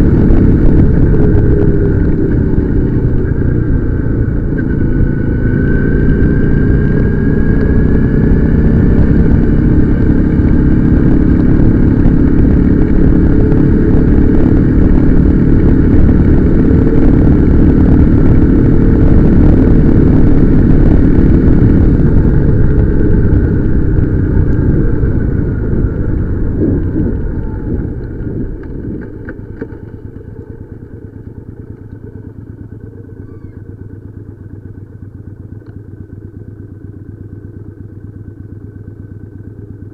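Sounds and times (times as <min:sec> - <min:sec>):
heavy wind noise: 0:00.0 - 0:31.6
motorcycle engine under load: 0:00.0 - 0:39.9.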